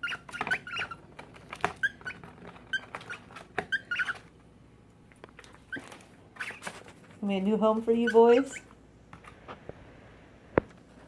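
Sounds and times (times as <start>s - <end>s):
cockatiels chirping: 0.0s - 1.0s, 1.7s - 4.2s
claws scratching paper bag: 0.0s - 4.3s, 5.6s - 7.2s.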